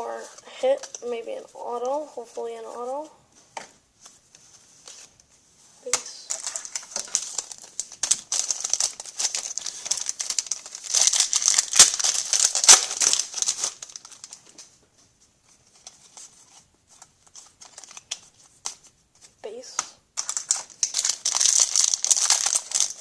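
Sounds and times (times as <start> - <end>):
foil wrapper crinkling: 6.2 - 14.7, 15.7 - 18.8, 20.2 - 23.0.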